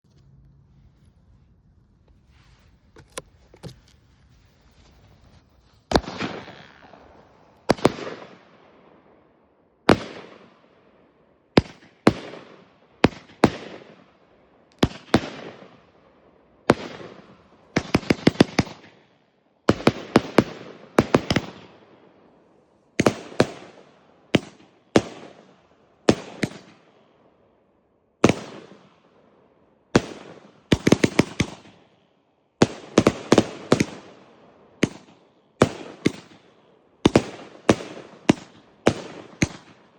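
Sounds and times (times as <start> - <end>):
crackling firework reports: 3.8 - 8.4
firework bangs with hiss: 4.4 - 8.1.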